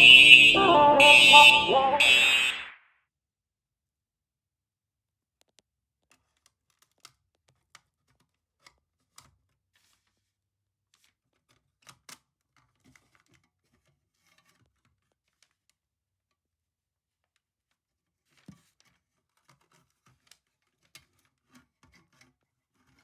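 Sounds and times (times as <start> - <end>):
faint handling clicks and rustles: 5.4 - 15.8, 17.2 - 23.0.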